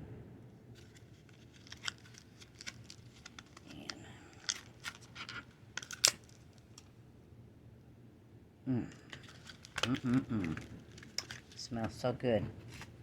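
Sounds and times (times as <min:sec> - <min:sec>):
plastic packaging clicks and crinkles: 0:00.8 - 0:06.9, 0:08.9 - 0:12.0.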